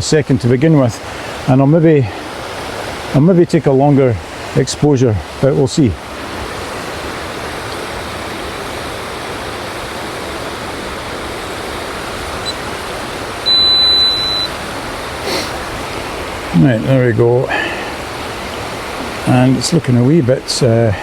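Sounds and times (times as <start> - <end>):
high electronic beep: 13.4 - 14.5
waterfall rushing: 14.5 - 16.5.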